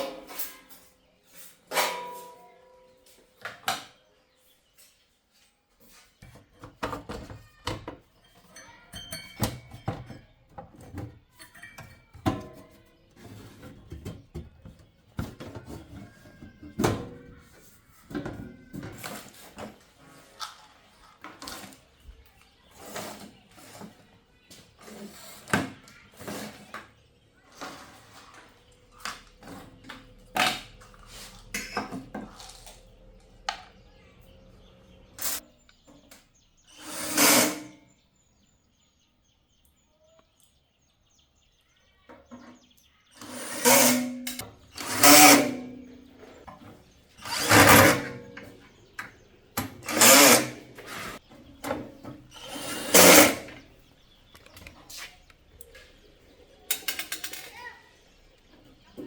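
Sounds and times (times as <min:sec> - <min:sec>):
tools and parts clinking: 0:00.0 - 0:03.8, 0:07.1 - 0:12.8, 0:43.2 - 0:45.8, 0:56.7 - 0:57.5.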